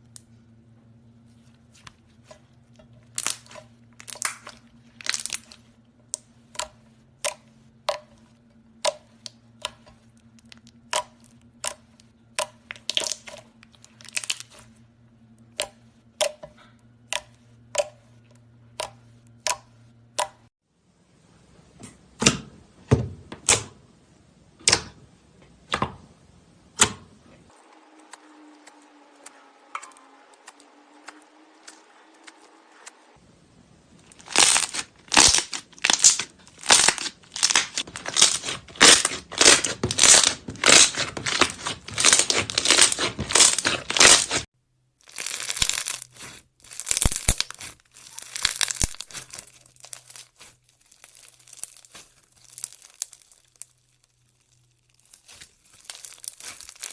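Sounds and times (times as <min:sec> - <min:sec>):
slime crackling and popping: 0:03.0 - 0:08.2, 0:08.8 - 0:14.8, 0:34.0 - 0:56.9.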